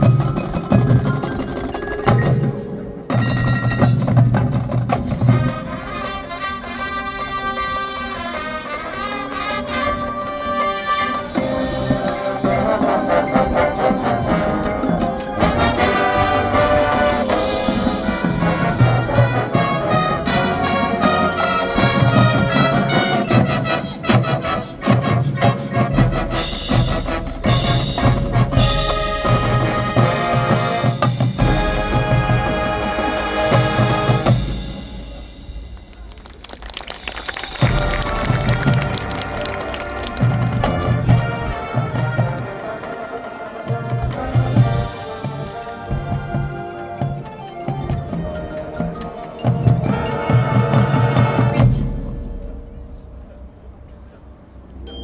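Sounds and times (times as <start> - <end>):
marching band playing: 0.0 - 52.4
percussion: 0.0 - 55.0
brass sustained chords: 5.3 - 36.2.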